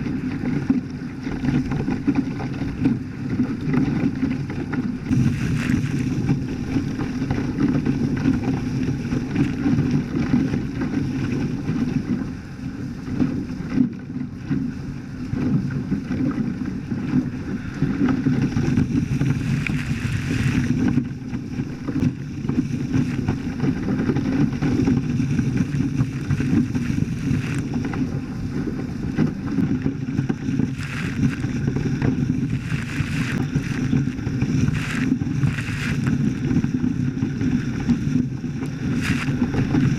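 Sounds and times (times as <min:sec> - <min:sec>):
water rushing along hulls: 0:00.0 - 0:39.9
wind noise on microphone: 0:00.0 - 0:39.9.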